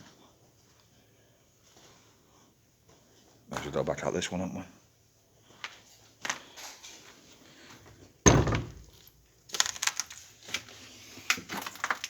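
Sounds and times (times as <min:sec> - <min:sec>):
door banging open: 0:08.3 - 0:09.0.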